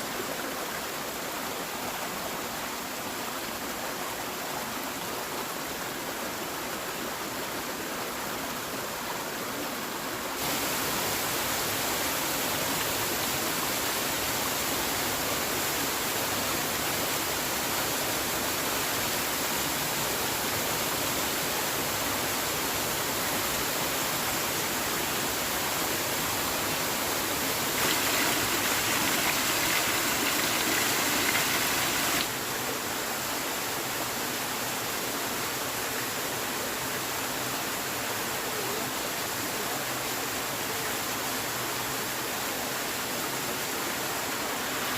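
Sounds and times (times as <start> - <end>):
rushing water: 0.0 - 44.9.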